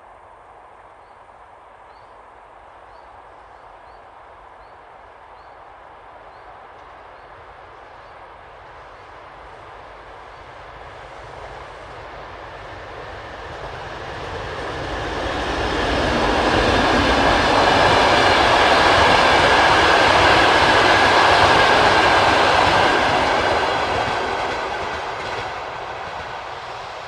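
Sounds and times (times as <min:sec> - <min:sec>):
train wheels rumbling on rails: 0:06.6 - 0:27.0.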